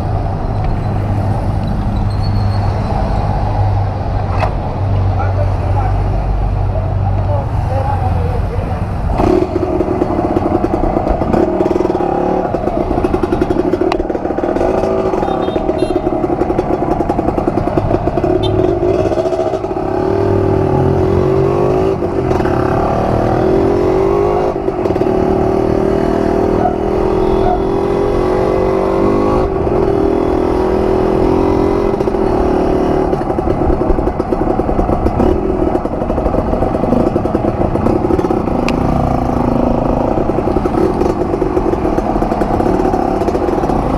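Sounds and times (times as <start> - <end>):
dirt bike engine revving: 9.1 - 33.4.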